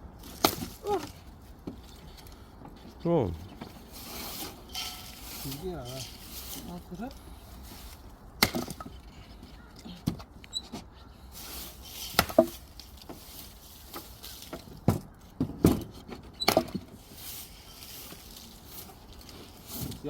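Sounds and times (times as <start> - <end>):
firewood knocking: 12.0 - 17.0.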